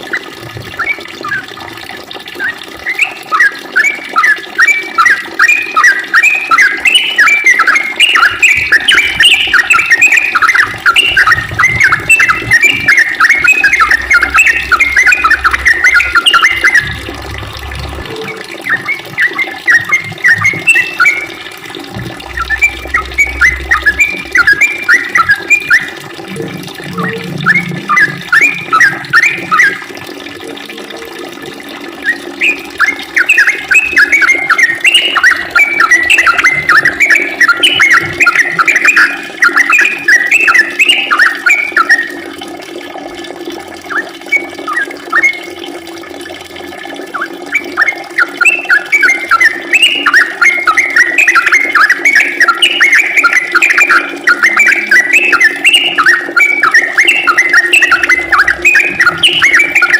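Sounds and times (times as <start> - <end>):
bird chirping song: 2.4 - 29.9, 32.0 - 42.1, 47.2 - 59.9
steady low hum: 19.9 - 29.1.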